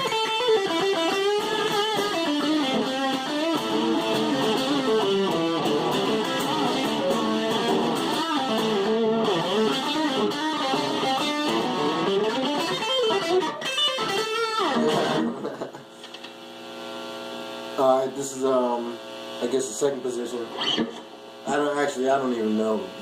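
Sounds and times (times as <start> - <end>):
distorted electric guitar: 0.0 - 18.5, 19.4 - 21.6.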